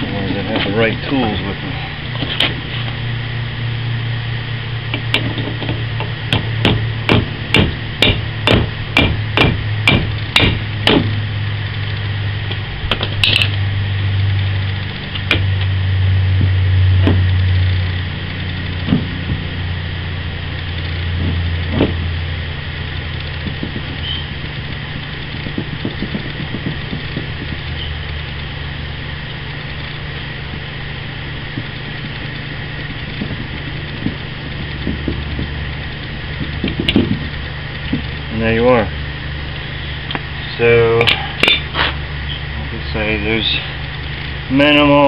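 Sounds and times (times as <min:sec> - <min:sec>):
steady low hum: 0:00.0 - 0:45.0
hammer striking metal tool: 0:06.3 - 0:11.1.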